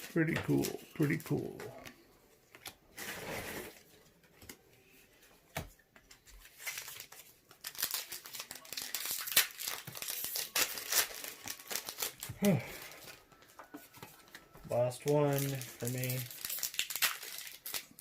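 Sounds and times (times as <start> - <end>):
foil wrapper crinkling and tearing: 6.4 - 13.2, 14.2 - 18.0.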